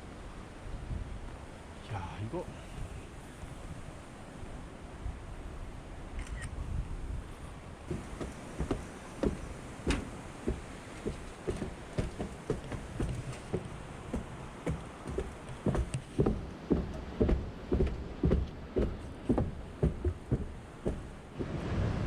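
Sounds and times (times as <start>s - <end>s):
low steady rumble: 2.5s - 22.0s
footsteps: 7.9s - 21.8s.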